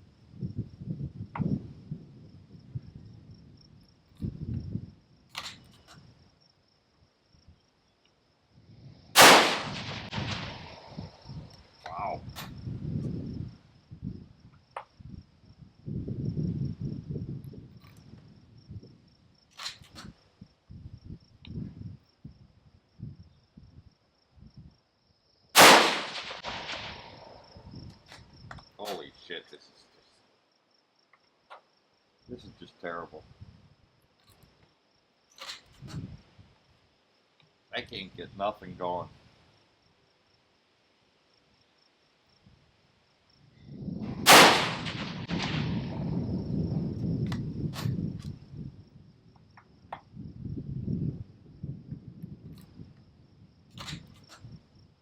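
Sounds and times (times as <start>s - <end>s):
wind buffeting microphone: 0.0s - 6.2s, 8.6s - 24.7s, 25.6s - 28.6s, 35.7s - 36.6s, 43.4s - 55.0s
insect drone: 0.0s - 55.0s
rifle shot: 9.2s - 11.2s, 25.6s - 27.5s, 44.0s - 46.2s
rush of low noise: 9.2s - 11.4s, 25.7s - 27.8s, 44.0s - 46.9s
sharp clicks: 25.6s - 27.2s.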